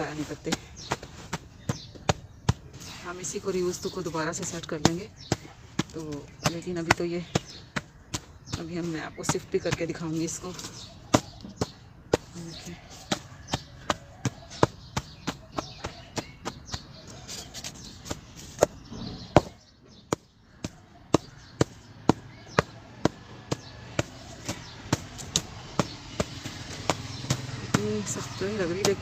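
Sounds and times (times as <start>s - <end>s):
hardened cement being struck: 17.6s - 29.0s.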